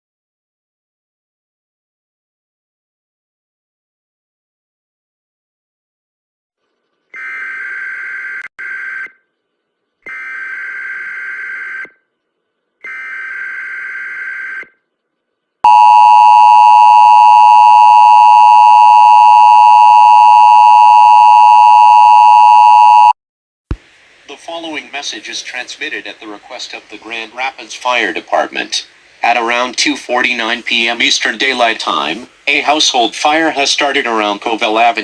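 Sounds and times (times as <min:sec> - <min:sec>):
two-tone attention signal: 0:15.7 - 0:23.2.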